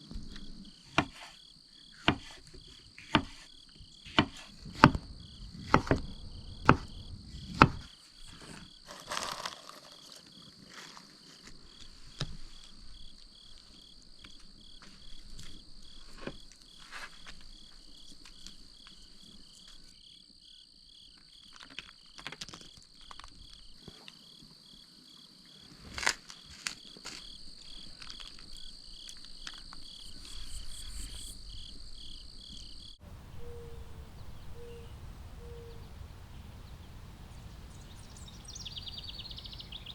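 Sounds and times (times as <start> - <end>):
insects chirping: 0.0 - 39.9
sharp knocks: 4.1 - 7.9
low rumble: 4.5 - 8.4.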